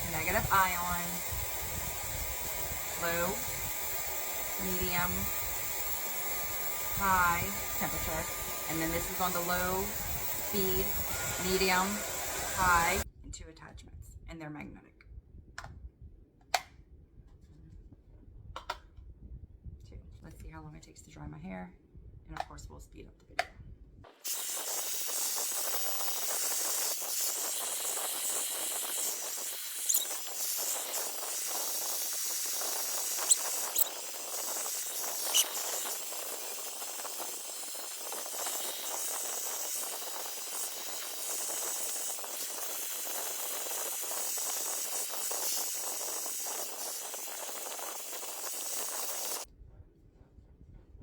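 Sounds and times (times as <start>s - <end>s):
hair dryer blowing: 0.0s - 13.0s, 24.2s - 49.5s
sharp squeaks: 29.0s - 31.4s, 32.7s - 36.0s.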